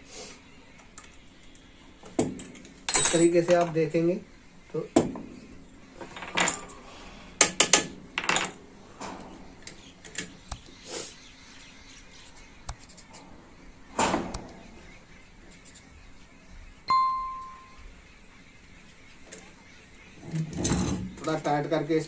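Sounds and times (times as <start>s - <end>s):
short ringing ding: 16.9s - 17.8s.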